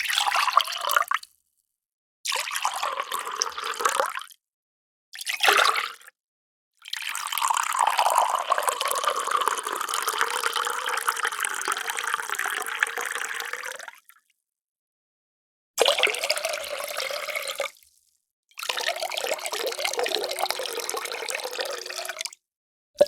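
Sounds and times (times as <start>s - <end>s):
water pouring: 18.6s - 22.4s.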